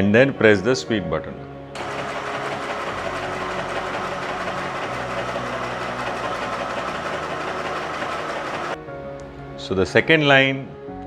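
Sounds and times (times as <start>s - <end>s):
sewing machine stitching: 1.8s - 8.8s.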